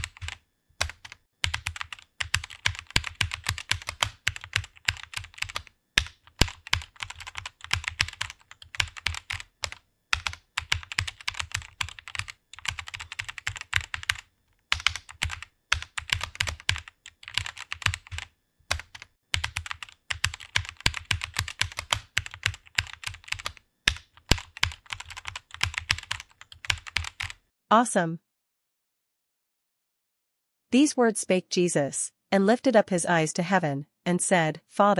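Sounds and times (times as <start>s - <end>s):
fast keyboard typing: 0.0s - 27.4s.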